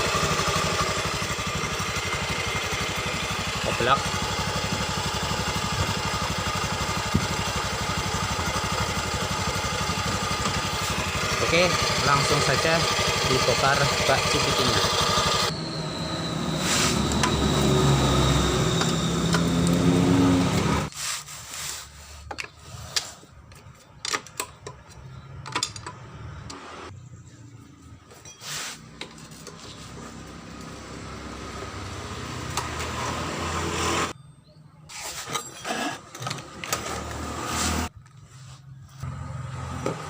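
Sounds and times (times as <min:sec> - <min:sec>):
loud steady machine noise: 0:00.0 - 0:20.9
metallic clicks of tools and bolts: 0:23.5 - 0:26.6.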